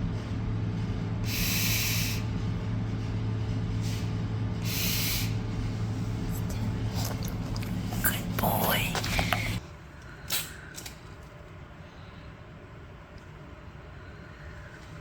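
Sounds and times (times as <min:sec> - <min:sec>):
steady low hum: 0:00.0 - 0:15.0
hissing air bursts: 0:01.2 - 0:02.3, 0:03.8 - 0:07.2.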